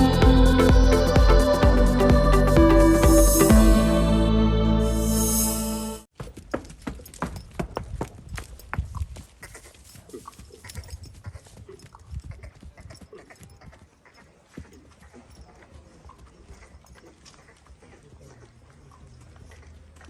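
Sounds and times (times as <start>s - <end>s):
horse hooves clip-clopping: 6.1s - 20.0s.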